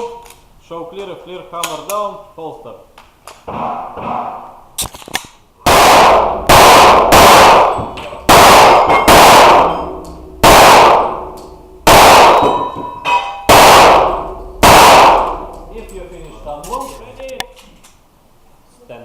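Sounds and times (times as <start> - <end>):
pistol shots echoing indoors: 5.6 - 16.0.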